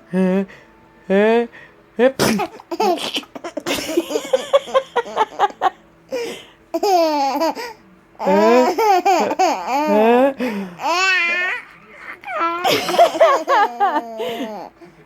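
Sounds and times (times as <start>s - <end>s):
baby laughing: 2.3s - 5.7s, 6.7s - 10.1s, 10.8s - 14.7s.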